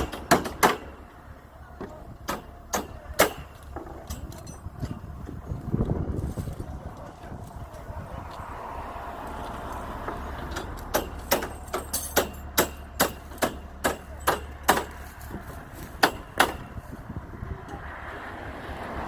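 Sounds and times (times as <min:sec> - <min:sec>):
hammer strikes: 0:00.0 - 0:01.1, 0:01.8 - 0:04.3, 0:10.0 - 0:16.7.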